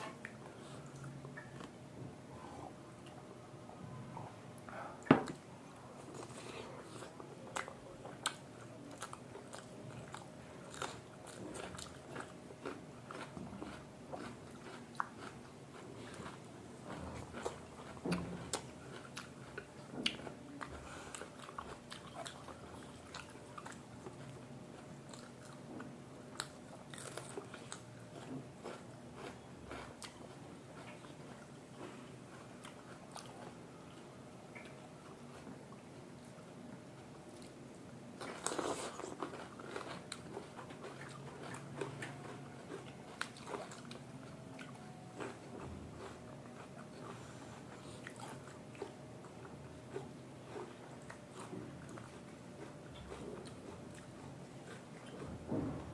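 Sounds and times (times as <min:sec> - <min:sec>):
chewing and mouth smacks: 0:06.1 - 0:24.4, 0:32.6 - 0:34.8.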